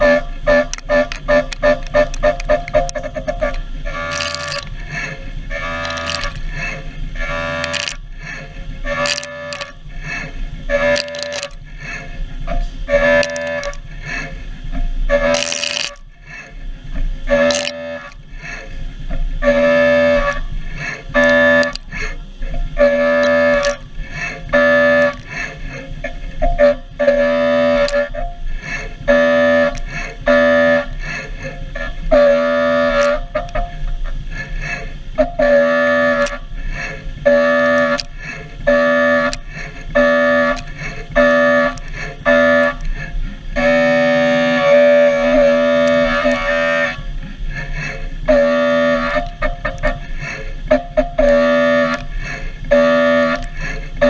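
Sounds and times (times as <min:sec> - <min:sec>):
sharp ticks of chips: 0:00.7 - 0:04.8, 0:05.8 - 0:06.5, 0:07.4 - 0:08.0, 0:09.0 - 0:09.8, 0:10.9 - 0:11.6, 0:13.1 - 0:13.8, 0:15.3 - 0:16.0, 0:17.4 - 0:18.2, 0:21.2 - 0:22.0, 0:23.2 - 0:23.9, 0:24.8 - 0:25.4, 0:37.8 - 0:38.4
milling cutter whining: 0:13.0 - 0:14.4.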